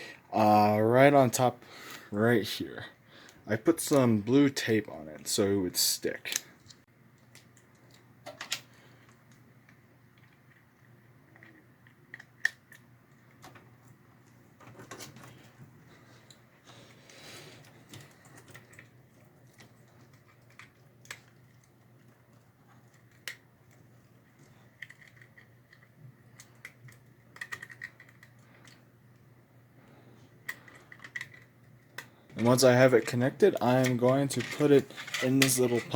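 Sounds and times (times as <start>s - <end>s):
faint steady hum: 0.0s - 35.9s
clicks and rustles of hands: 6.2s - 29.3s, 30.3s - 33.2s.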